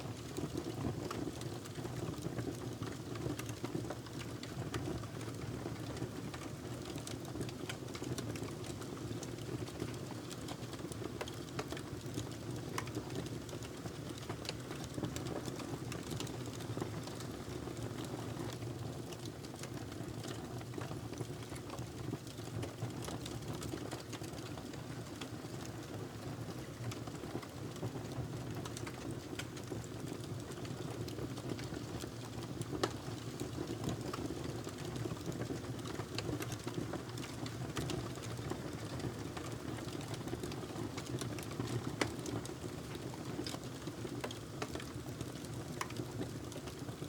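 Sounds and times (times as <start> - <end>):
wood fire crackling: 28.4 - 46.8.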